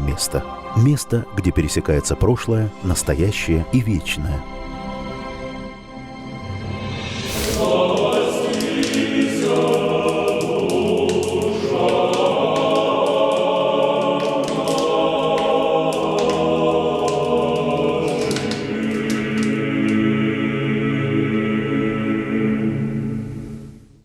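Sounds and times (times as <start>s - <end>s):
choir singing slow chant: 6.2s - 23.9s.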